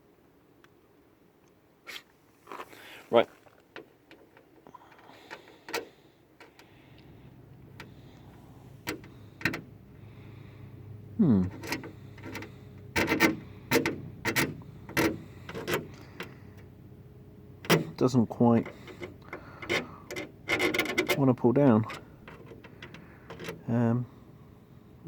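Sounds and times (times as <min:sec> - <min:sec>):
bonnet latch clicking and clunking: 0:07.6 - 0:09.7, 0:11.4 - 0:16.4, 0:17.6 - 0:18.0, 0:18.6 - 0:23.7.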